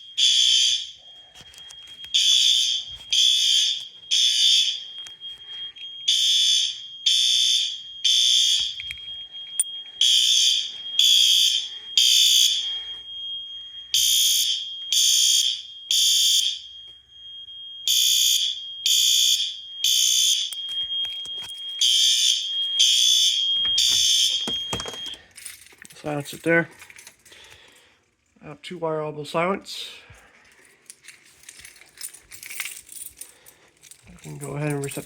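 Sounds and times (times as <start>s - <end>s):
fire alarm horn blasts: 0.0s - 25.2s
faint steady high tone: 7.8s - 14.9s, 23.5s - 25.3s.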